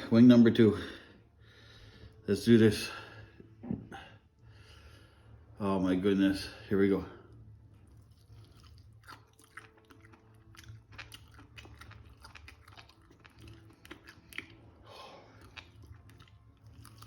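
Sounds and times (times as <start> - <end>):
person chewing wetly: 7.3 - 17.0.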